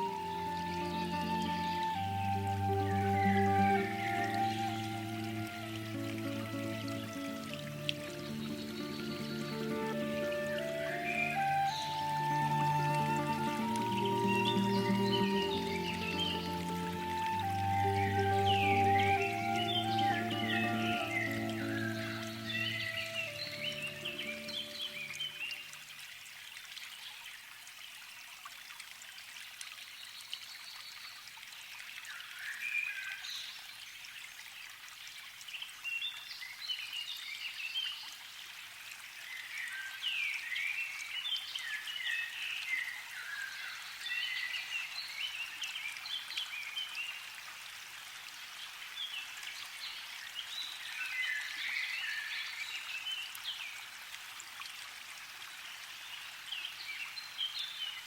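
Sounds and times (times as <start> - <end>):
background hiss: 0.0 - 27.7.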